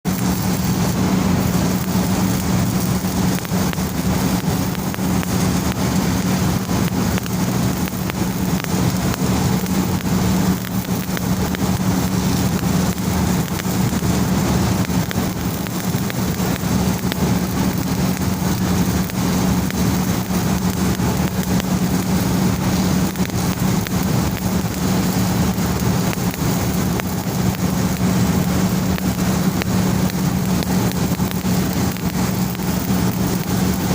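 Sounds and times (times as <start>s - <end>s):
welding arc crackling and sizzling: 0.0s - 33.9s
constant low hum: 0.1s - 33.9s.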